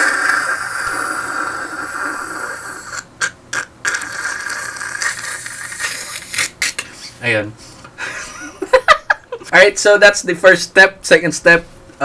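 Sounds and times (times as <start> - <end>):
beatboxer's raspy k sound: 0.0 - 7.2.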